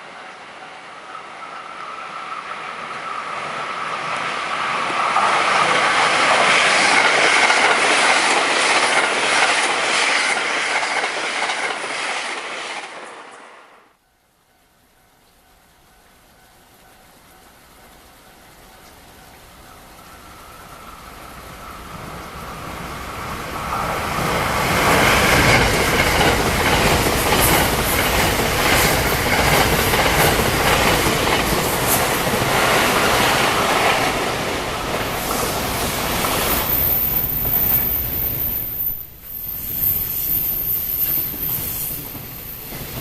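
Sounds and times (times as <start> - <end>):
freight train passing: 0.0 - 43.0
wheels clacking over rail joints: 4.1 - 13.3, 23.6 - 38.4.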